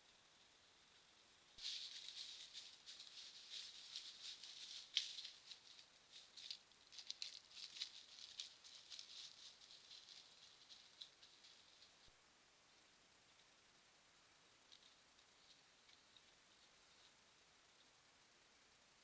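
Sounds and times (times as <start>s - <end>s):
dry leaves crackling and rustling: 1.6s - 12.1s.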